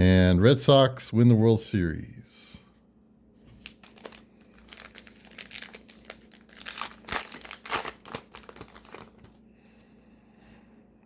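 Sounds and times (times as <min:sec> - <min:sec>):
card pack wrapper tearing: 0:03.6 - 0:09.4.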